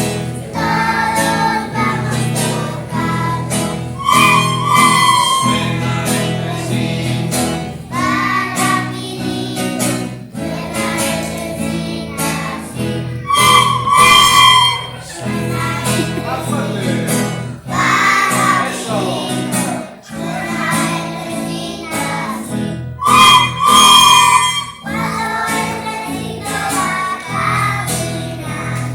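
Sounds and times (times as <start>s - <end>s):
children singing: 0.0s - 28.9s
flute and instrumental accompaniment: 3.1s - 6.5s, 13.2s - 15.5s, 23.0s - 25.7s.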